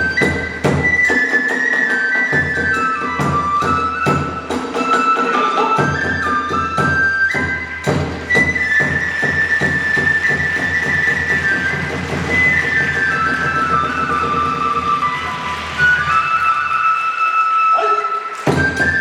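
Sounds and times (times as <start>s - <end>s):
bamboo flute notes: 0.0s - 19.0s
drum beat: 2.5s - 15.0s.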